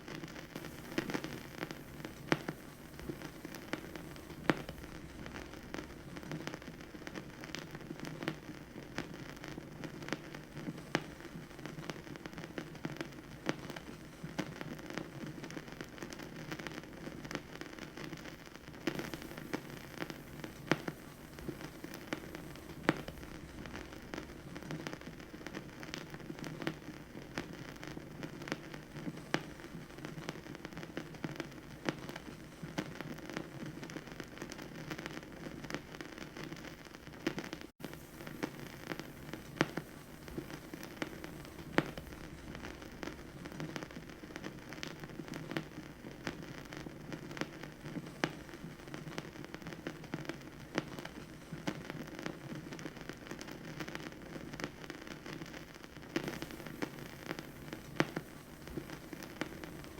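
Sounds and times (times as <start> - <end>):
vinyl hiss and rumble: 0.0 - 59.9
vinyl clicks and pops: 0.5 - 6.6, 18.9 - 26.0, 37.3 - 44.9, 56.2 - 59.9.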